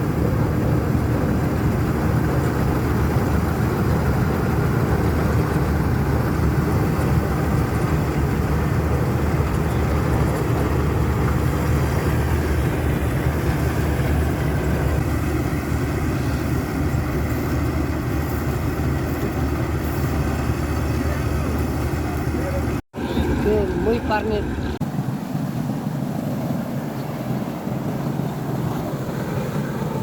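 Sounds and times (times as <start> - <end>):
harvesting machine engine running: 0.0 - 24.8.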